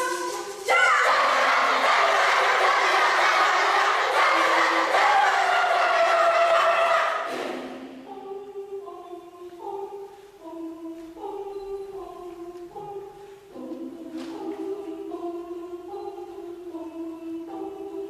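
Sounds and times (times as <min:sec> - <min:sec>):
loud crowd noise: 0:00.0 - 0:07.9
choir singing a cappella: 0:00.0 - 0:18.0.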